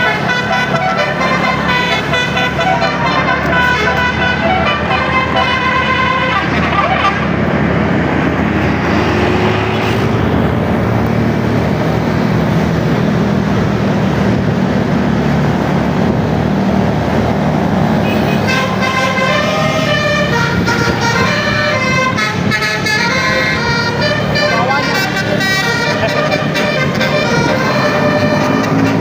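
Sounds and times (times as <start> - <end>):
bus multi-tone horn: 0.0 - 7.4, 18.0 - 29.0
heavy vehicle engine: 0.0 - 29.0
road noise: 0.0 - 29.0.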